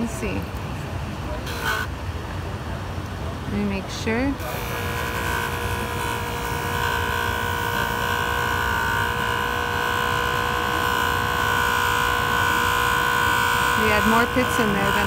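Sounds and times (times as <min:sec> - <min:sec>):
polishing machine motor whining: 0:01.4 - 0:01.9, 0:04.0 - 0:15.0.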